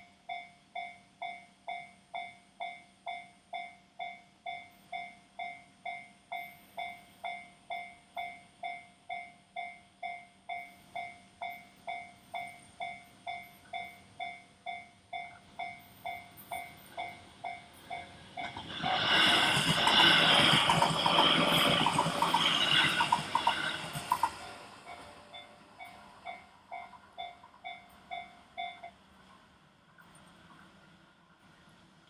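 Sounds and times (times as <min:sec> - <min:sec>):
level-crossing warning bell: 0:00.0 - 0:29.0
train wheels clattering over rails: 0:17.8 - 0:25.9.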